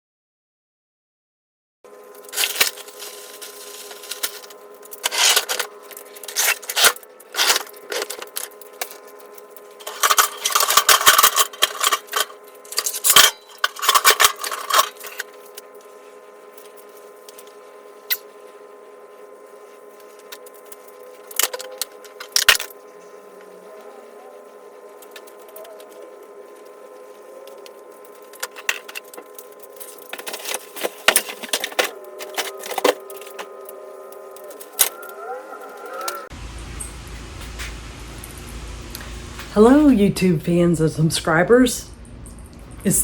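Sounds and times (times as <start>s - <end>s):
steady hum: 1.9s - 43.0s
objects clattering and rustling: 2.2s - 15.9s, 25.0s - 36.3s.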